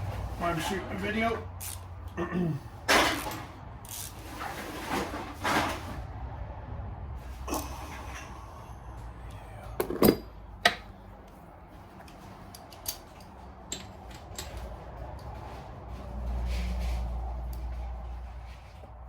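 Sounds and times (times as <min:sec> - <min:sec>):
metal parts clinking on workbench: 0:09.8 - 0:10.8.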